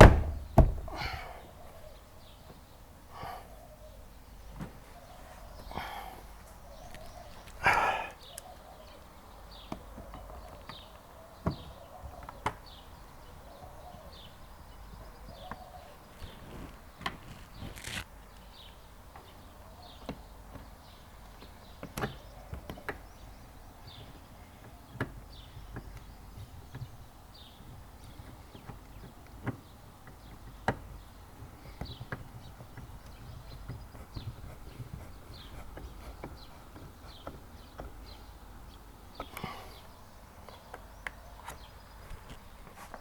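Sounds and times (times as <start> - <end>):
plastic trim panel clicks and knocks: 0.0 - 0.9.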